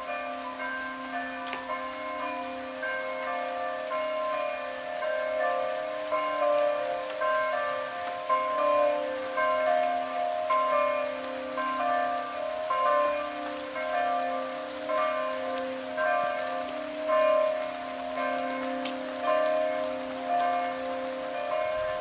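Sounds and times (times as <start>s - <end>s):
church bells pealing: 0.0s - 22.0s
rain hissing: 0.0s - 22.0s.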